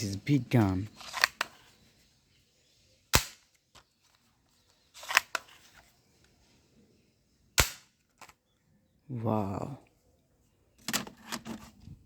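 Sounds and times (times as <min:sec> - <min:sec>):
toy gun firing: 0:03.1 - 0:03.5, 0:07.6 - 0:08.0.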